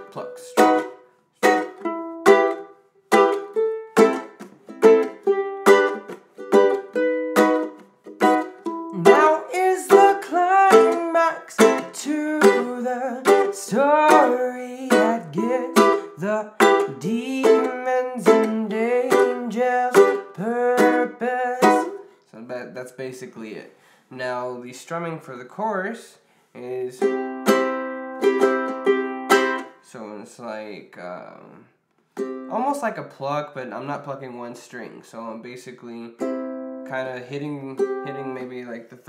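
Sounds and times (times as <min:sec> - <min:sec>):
ukulele plucked and strummed: 0:00.0 - 0:22.1, 0:26.9 - 0:29.8, 0:32.2 - 0:33.1, 0:35.9 - 0:39.0
person humming: 0:08.9 - 0:22.0.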